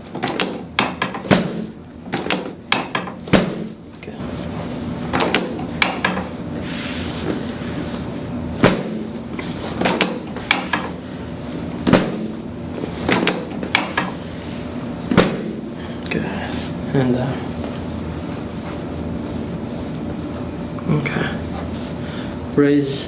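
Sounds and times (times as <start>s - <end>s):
sharp clicks and knocks: 0.0s - 3.6s, 5.1s - 6.3s, 9.8s - 10.9s, 13.1s - 14.2s.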